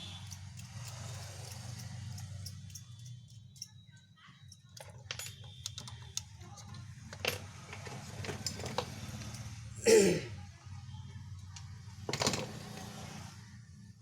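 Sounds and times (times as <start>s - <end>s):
tools clicking and clinking: 0.0s - 9.6s.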